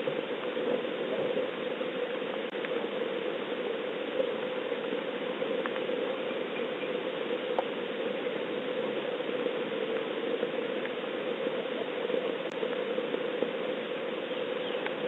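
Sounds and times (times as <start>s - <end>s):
steady rain falling: 0.0s - 15.0s
faint ticks: 5.6s - 5.9s, 14.7s - 15.0s.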